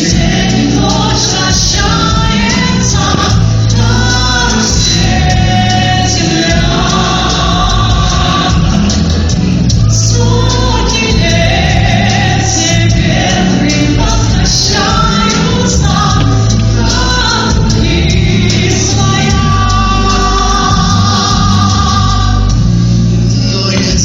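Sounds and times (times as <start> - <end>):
instrumental backing track: 0.0 - 24.0
person singing: 10.0 - 22.7.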